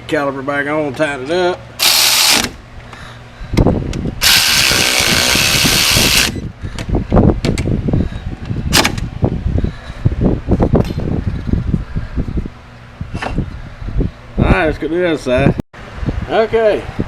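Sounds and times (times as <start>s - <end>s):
power tool running: 1.8s - 2.6s, 4.2s - 6.4s.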